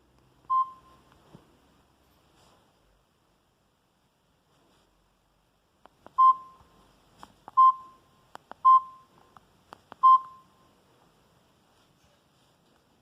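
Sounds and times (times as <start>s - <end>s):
short high beeps: 0.5s - 1.0s, 6.2s - 6.7s, 7.6s - 8.0s, 8.6s - 9.1s, 10.0s - 10.6s.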